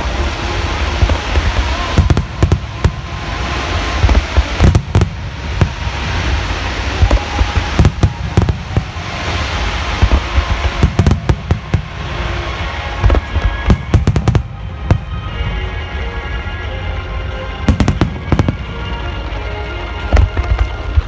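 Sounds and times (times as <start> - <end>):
continuous hiss and rumble: 0.0 - 21.0
fireworks booms and crackles: 0.0 - 21.0.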